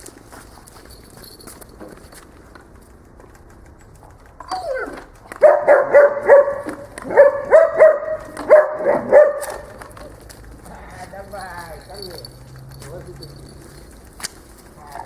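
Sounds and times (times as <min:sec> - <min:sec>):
dog whining: 0:04.4 - 0:09.7
dog barking: 0:04.6 - 0:09.8.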